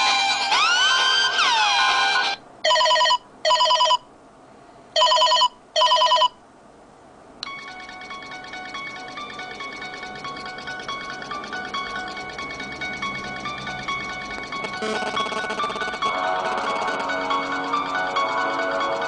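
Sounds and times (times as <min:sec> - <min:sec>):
swooping rising ringtone: 0:00.0 - 0:04.0, 0:05.0 - 0:06.4, 0:07.4 - 0:19.0
telephone trilling rings: 0:02.6 - 0:04.1, 0:05.0 - 0:06.4, 0:07.4 - 0:13.2, 0:14.0 - 0:19.0
chiming plucked ringtone: 0:05.0 - 0:06.4, 0:07.4 - 0:15.9.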